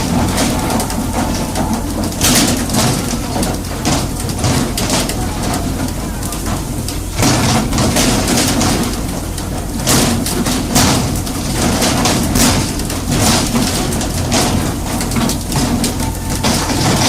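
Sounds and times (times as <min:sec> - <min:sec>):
low hum: 0:00.0 - 0:06.2.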